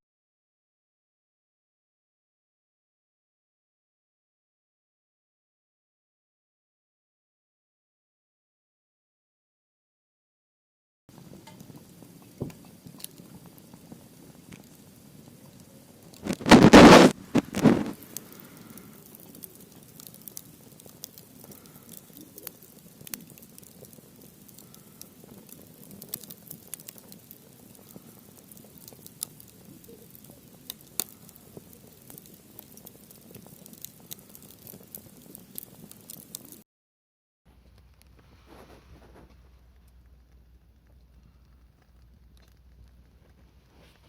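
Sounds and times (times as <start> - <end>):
campfire crackling and popping: 11.1 - 36.6, 37.6 - 44.0
faint steady hiss: 11.1 - 36.6, 37.5 - 44.0
brief rushing noise: 16.3 - 17.9.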